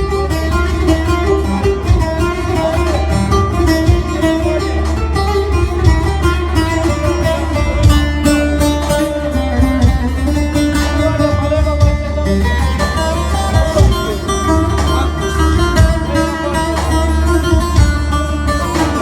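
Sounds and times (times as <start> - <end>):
low accompaniment: 0.0 - 19.0
plucked saz melody: 0.0 - 19.0.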